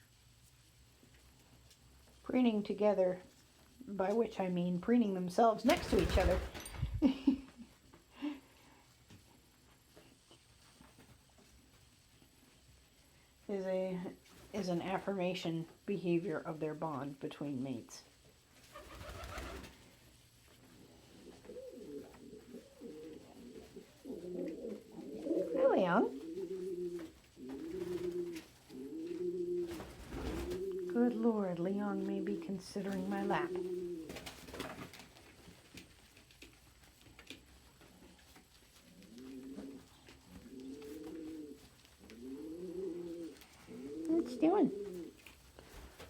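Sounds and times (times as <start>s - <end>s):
pigeons cooing: 20.8s - 31.0s, 32.1s - 34.3s, 38.8s - 45.2s.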